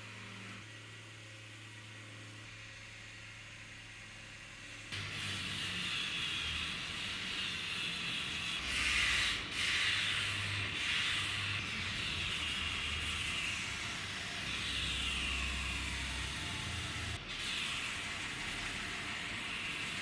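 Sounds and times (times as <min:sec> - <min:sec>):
abrasive sanding: 0:05.0 - 0:20.0.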